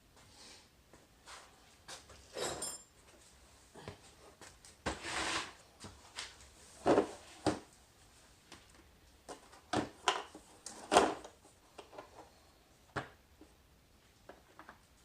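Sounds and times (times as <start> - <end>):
metal tool clinks: 2.4 - 2.9.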